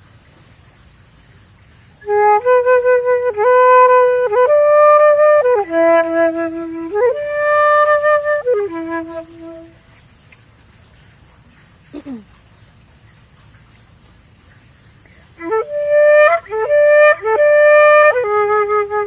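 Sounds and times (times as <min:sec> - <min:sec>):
flute playing slow melody: 0:02.0 - 0:09.9, 0:15.4 - 0:19.0.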